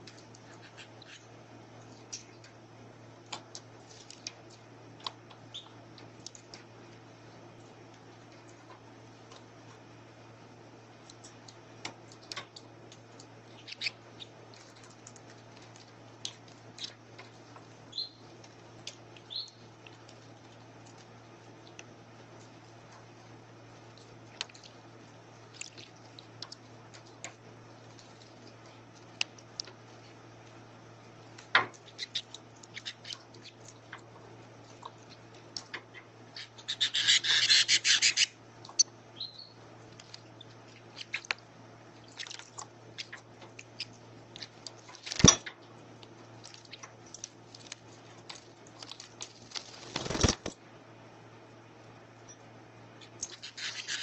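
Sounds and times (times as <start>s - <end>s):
steady low hum: 0.0s - 54.0s
birds splashing and wing-fluttering: 46.4s - 50.5s.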